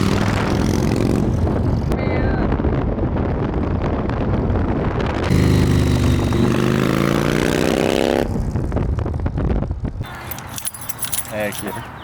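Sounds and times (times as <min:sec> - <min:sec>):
vehicle engine accelerating: 0:05.2 - 0:09.1.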